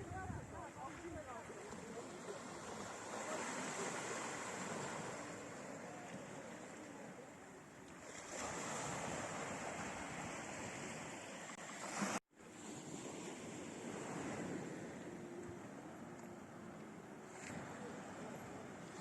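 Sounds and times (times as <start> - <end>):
waves washing onto shore: 0.0 - 19.0.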